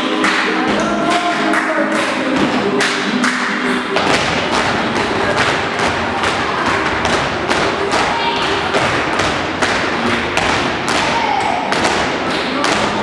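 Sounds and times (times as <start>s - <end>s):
faint music: 0.0s - 13.0s
shoes stamping on a floor: 4.0s - 13.0s.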